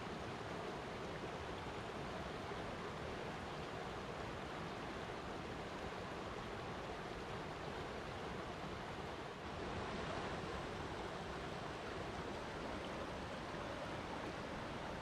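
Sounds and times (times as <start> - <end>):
water rushing: 3.5 - 15.0.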